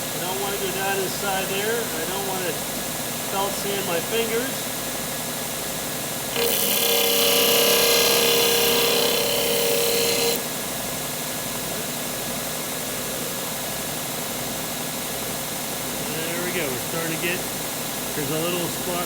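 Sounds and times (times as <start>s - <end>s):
sander motor running: 6.3s - 10.4s
disc sander grinding steel: 6.4s - 10.4s.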